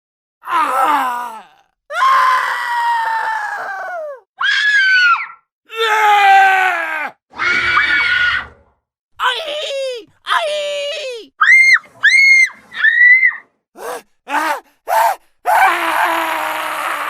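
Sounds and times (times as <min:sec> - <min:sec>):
person screaming: 0:00.4 - 0:04.5, 0:05.7 - 0:08.5, 0:13.8 - 0:17.0.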